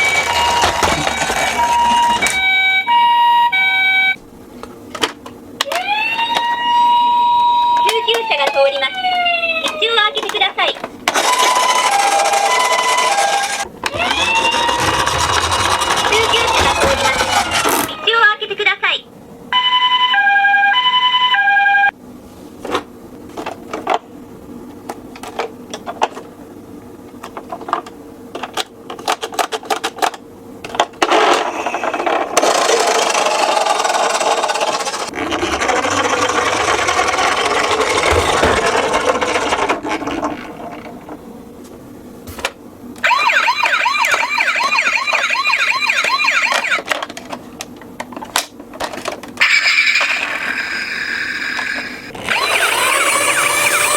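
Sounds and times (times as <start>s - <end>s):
electronic toy siren: 0.0s - 4.2s, 5.6s - 9.9s, 11.2s - 18.1s, 19.6s - 21.9s, 43.0s - 46.9s, 49.4s - 53.9s
toy cars rattling down a slope: 11.1s - 17.9s, 31.8s - 40.7s, 49.4s - 53.9s.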